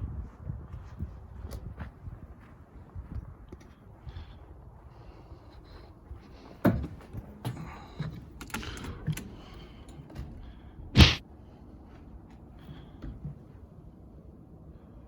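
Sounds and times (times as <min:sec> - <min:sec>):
loud sharp thump: 0:11.0 - 0:11.2.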